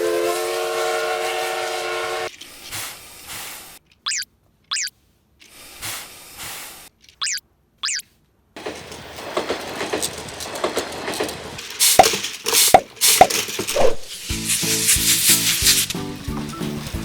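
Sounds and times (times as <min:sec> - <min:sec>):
toy tune: 0:04.1 - 0:04.9, 0:07.2 - 0:08.0
clattering knocks: 0:08.6 - 0:13.8
toy train rattling on track: 0:08.6 - 0:17.0.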